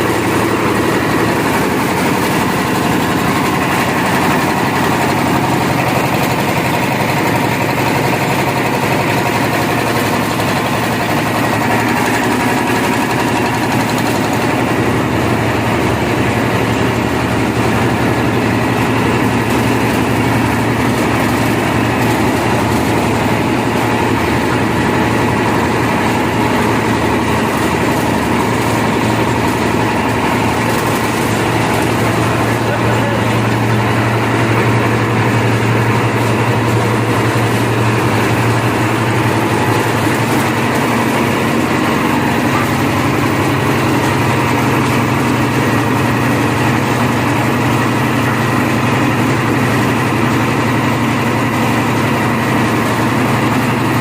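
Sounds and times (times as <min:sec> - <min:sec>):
concrete mixer engine drone: 0:00.0 - 0:54.0.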